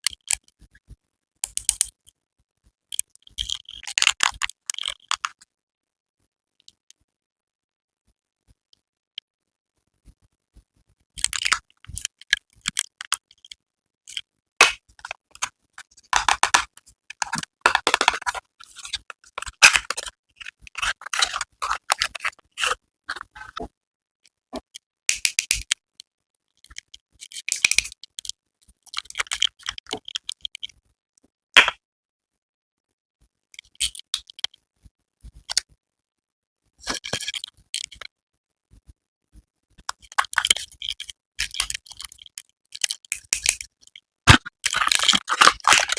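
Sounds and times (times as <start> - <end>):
packaging rustling: 14.6 - 23.7, 44.3 - 45.9
packaging scraping: 14.6 - 23.7, 44.3 - 45.9.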